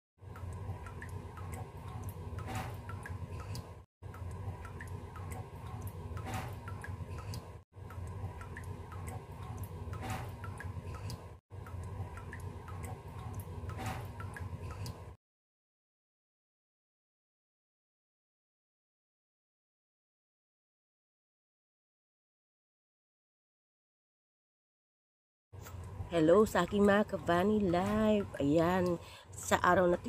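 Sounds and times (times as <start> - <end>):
water dripping from faucet: 0.2 - 15.2, 25.6 - 30.0.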